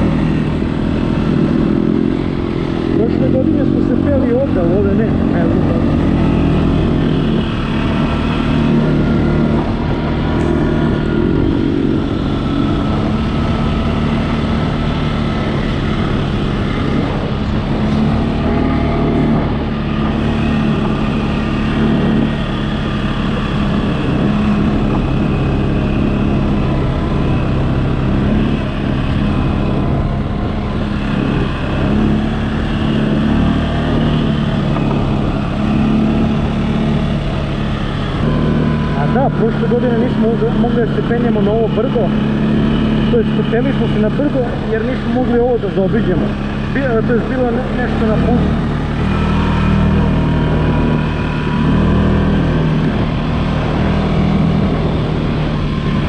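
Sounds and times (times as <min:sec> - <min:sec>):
atv engine running: 0:00.0 - 0:56.0.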